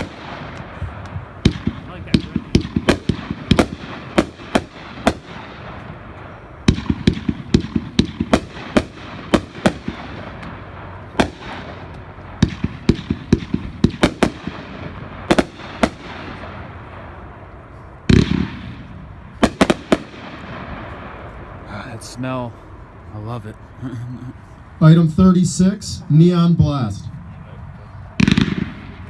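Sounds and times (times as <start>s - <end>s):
firework bangs: 0.0s - 22.4s, 28.1s - 29.0s
firework crackle: 0.0s - 22.5s.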